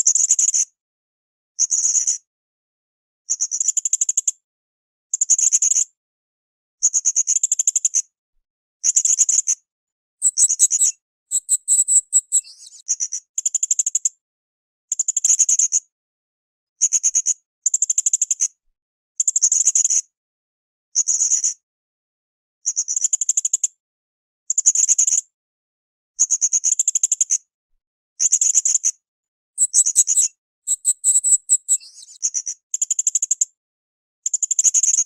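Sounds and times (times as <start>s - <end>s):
parrot high-pitched chirps: 10.2s - 12.5s, 29.6s - 32.3s.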